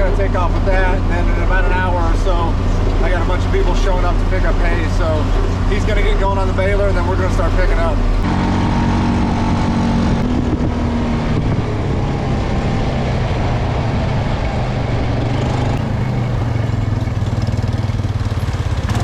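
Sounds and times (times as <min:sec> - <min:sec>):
tractor engine droning: 0:00.0 - 0:19.0.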